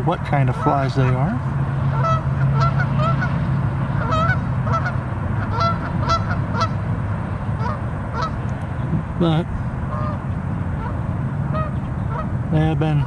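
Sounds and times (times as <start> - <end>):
low background rumble: 0.0 - 13.0
geese honking: 0.4 - 3.4, 4.0 - 6.8, 7.6 - 8.4, 9.9 - 13.0.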